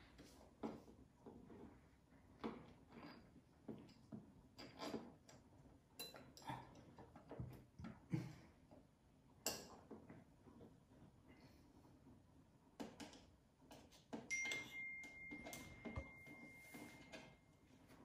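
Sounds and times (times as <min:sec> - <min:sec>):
hardware clicks and knocks: 0:12.8 - 0:17.6.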